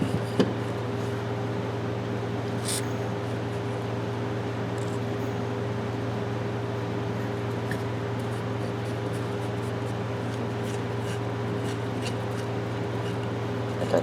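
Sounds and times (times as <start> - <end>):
motor humming: 7.5 - 14.0.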